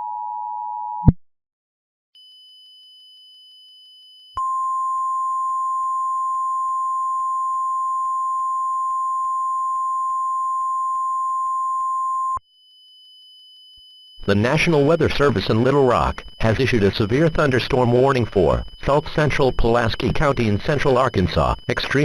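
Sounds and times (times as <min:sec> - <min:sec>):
loud steady warning tone: 0:13.7 - 0:22.0.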